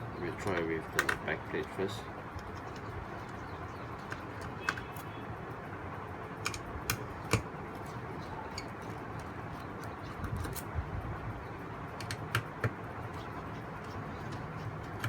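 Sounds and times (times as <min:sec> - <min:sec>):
screwdriver clicks and taps: 0:06.4 - 0:07.5, 0:12.0 - 0:12.8.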